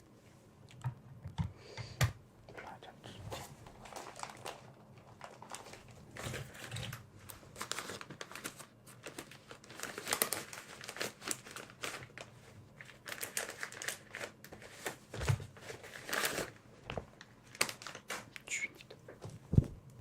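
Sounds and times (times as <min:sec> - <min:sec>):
tissue paper crinkling: 0:03.3 - 0:16.6, 0:17.2 - 0:18.3.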